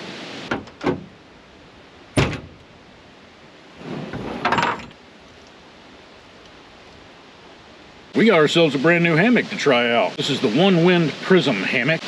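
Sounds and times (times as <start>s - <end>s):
handling knocks: 2.2s - 2.7s
clattering: 4.1s - 5.0s.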